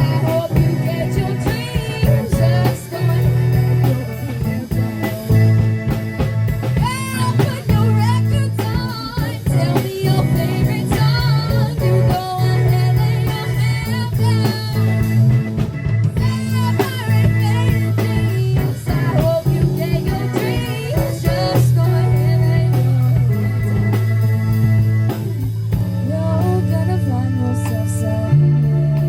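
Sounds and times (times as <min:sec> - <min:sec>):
steady drum beat: 0:00.0 - 0:26.9
melodic lead with bending notes: 0:00.0 - 0:29.0
sustained bass notes: 0:00.0 - 0:29.0.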